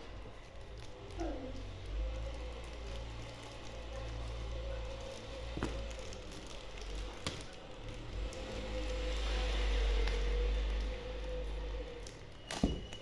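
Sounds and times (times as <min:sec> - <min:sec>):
packaging handling noise: 0:00.0 - 0:13.0.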